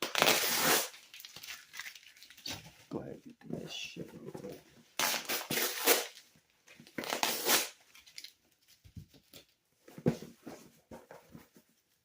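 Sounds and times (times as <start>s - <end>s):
packing tape ripping: 0.0s - 2.5s, 5.0s - 6.2s, 7.0s - 8.3s.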